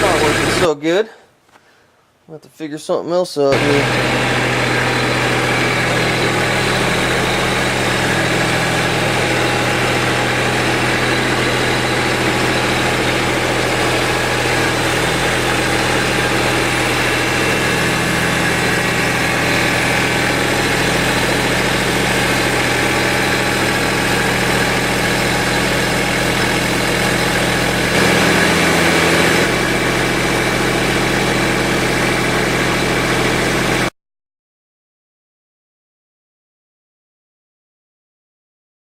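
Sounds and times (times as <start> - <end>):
motor humming: 3.6 - 31.2.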